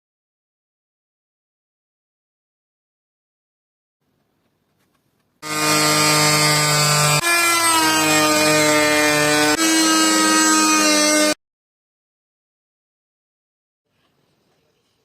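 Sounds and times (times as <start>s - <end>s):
power tool motor whining: 5.4s - 11.4s.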